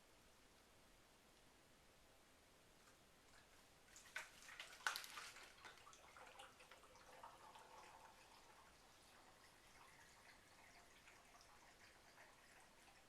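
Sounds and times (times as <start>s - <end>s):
water gurgling through bottles: 4.0s - 13.0s.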